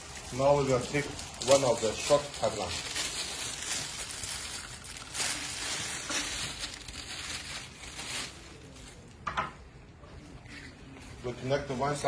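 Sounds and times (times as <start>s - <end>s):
plastic tube crinkling: 0.0s - 9.2s.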